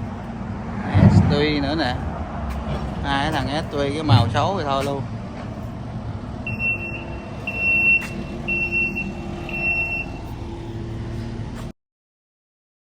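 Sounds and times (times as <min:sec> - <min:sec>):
low engine rumble: 0:00.0 - 0:11.7
vehicle reversing beeper: 0:06.4 - 0:11.7.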